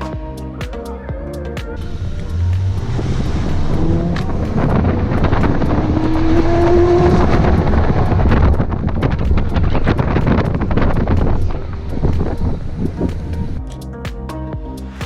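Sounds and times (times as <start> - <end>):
loud rushing noise: 1.8 - 13.6
car engine revving hard: 2.3 - 8.8.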